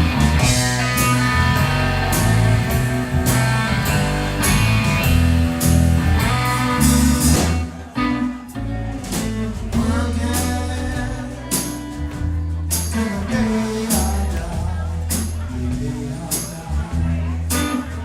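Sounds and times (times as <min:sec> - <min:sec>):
blues-rock band playing: 0:00.0 - 0:18.0.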